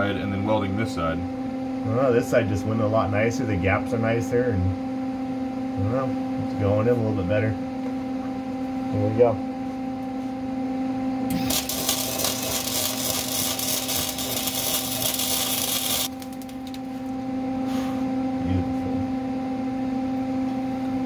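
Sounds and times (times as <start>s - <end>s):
steady hum: 0.0s - 21.0s
welding arc crackling: 11.3s - 17.0s.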